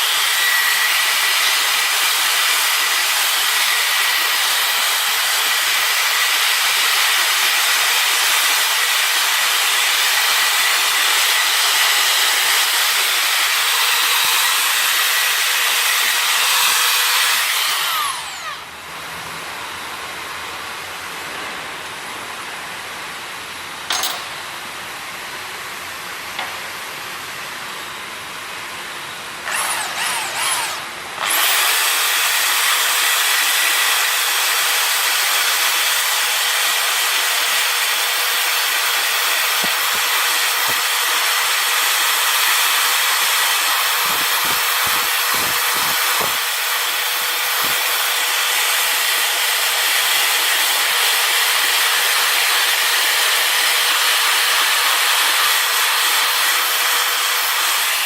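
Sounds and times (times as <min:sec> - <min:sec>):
power drill wire brush whine: 0:00.0 - 0:18.7, 0:29.4 - 0:58.0.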